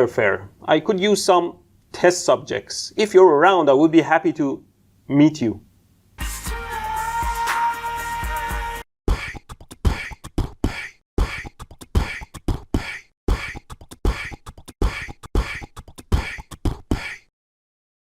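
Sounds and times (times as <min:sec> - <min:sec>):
beatboxing vocal percussion: 0:06.2 - 0:17.3.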